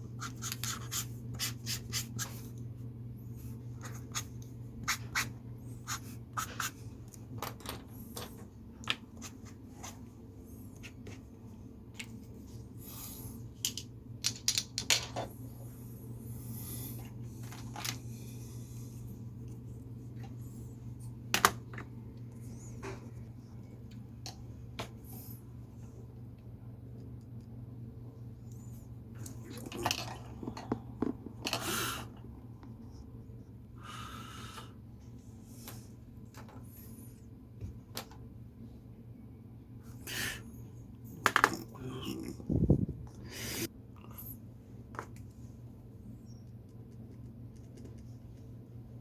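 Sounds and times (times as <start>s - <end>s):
steady low hum: 0.0s - 49.0s
pens clicking and tapping: 13.6s - 15.3s.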